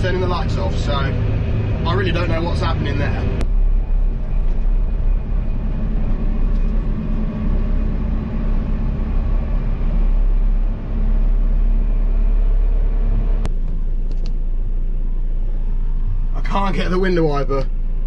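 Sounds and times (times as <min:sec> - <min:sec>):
diesel engine low rumble: 0:00.0 - 0:18.0.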